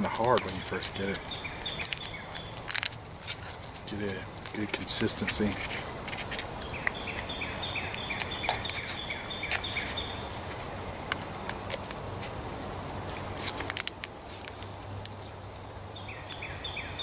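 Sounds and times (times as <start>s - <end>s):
bird chirping: 0.0s - 11.7s, 15.8s - 17.0s
packaging crinkling: 0.2s - 4.8s.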